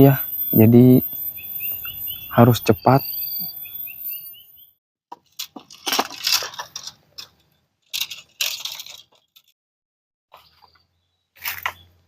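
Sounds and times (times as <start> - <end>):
handling rustling: 5.2 - 9.5.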